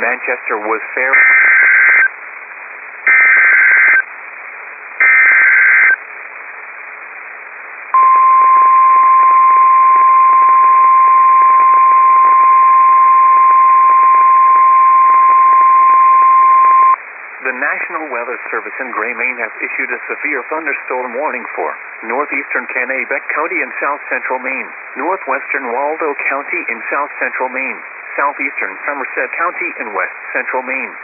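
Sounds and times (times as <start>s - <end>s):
radio static hiss: 0.0s - 8.1s, 9.8s - 31.0s
steady warning alarm tone: 1.2s - 2.1s, 3.1s - 4.0s, 5.0s - 6.0s
warbling digital data bursts: 3.1s - 4.0s.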